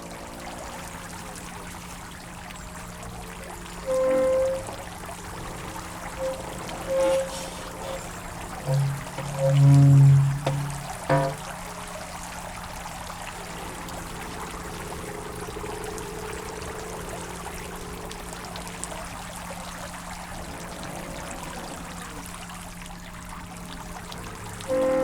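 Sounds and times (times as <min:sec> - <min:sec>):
waterwheel squeaking: 0:00.0 - 0:12.3, 0:24.0 - 0:25.0
stream water rushing: 0:00.0 - 0:17.4.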